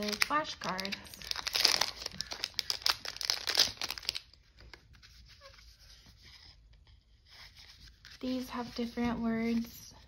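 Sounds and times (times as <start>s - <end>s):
packaging crinkling: 0.0s - 5.5s.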